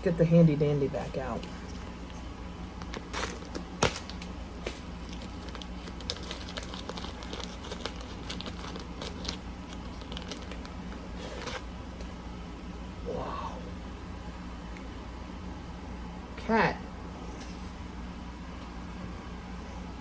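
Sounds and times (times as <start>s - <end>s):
package crinkling: 2.8s - 11.7s.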